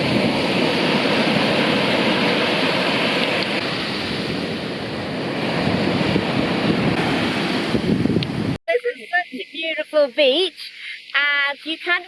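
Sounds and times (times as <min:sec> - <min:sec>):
surf breaking on beach: 0:00.0 - 0:08.6.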